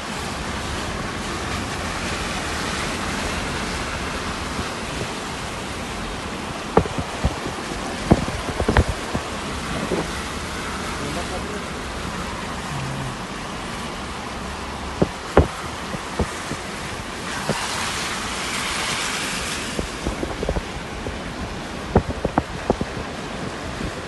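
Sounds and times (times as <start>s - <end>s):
floodwater rushing: 0.0s - 24.0s
short sharp knocks: 6.8s - 7.5s.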